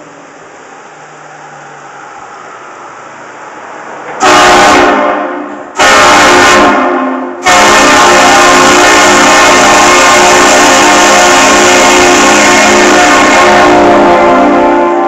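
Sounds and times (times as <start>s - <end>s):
air horns blasting a chord: 4.2s - 15.0s.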